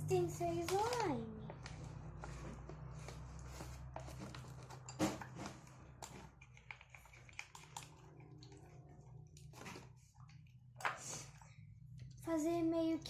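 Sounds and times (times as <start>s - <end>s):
faint clicks and taps of stirring: 6.0s - 12.2s.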